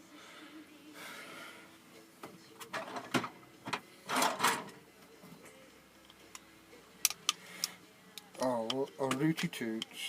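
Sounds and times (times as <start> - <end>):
sharp clicks of small parts: 6.0 - 10.0.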